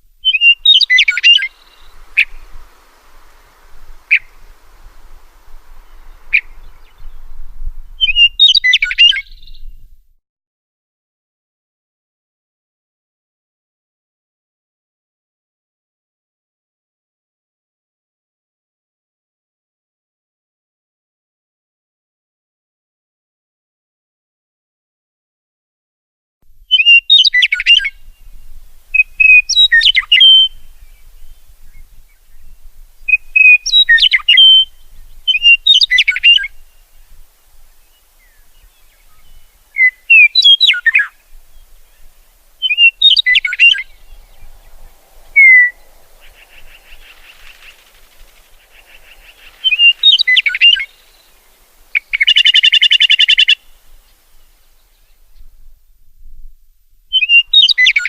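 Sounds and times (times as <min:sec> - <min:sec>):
loud buzzy bird trill: 0:00.2 - 0:07.3, 0:26.7 - 0:32.2, 0:33.1 - 0:37.2, 0:37.8 - 0:54.4
songbird whistled song: 0:00.2 - 0:09.8, 0:26.7 - 0:55.7, 0:57.1 - 0:58.0.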